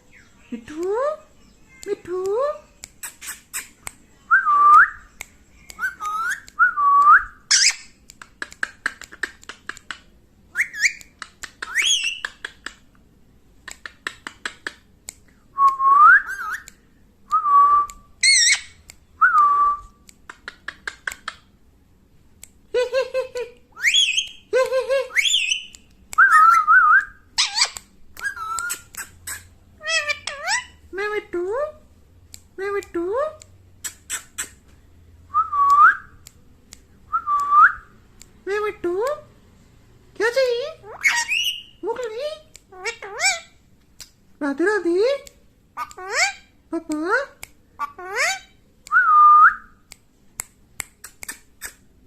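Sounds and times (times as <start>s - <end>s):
parrot clicks: 5.1s - 13.0s, 13.6s - 16.8s, 20.0s - 21.5s, 49.8s - 51.8s
parrot whistling: 5.8s - 7.9s, 10.5s - 11.1s, 16.0s - 16.7s, 23.8s - 24.5s, 25.1s - 30.8s, 40.8s - 41.8s.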